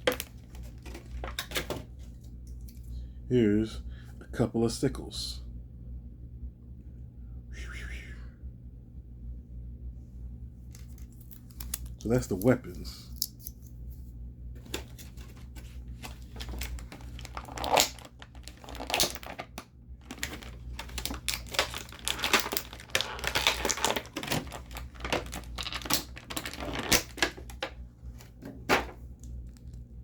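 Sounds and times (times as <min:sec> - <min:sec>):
plastic packaging crinkling: 0:00.0 - 0:01.8, 0:10.7 - 0:12.1, 0:14.6 - 0:29.9.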